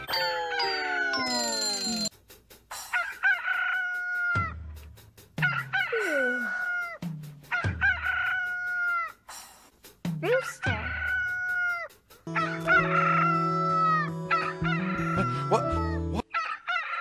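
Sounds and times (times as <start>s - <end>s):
rooster crowing: 2.9s - 4.6s, 5.4s - 9.1s, 10.8s - 15.4s, 16.3s - 17.0s.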